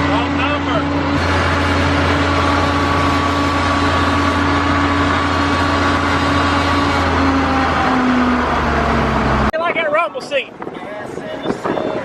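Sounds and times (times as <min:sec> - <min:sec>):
car engine drone: 0:00.0 - 0:09.6
steady whine: 0:00.0 - 0:10.4
road and wind noise: 0:00.0 - 0:12.0.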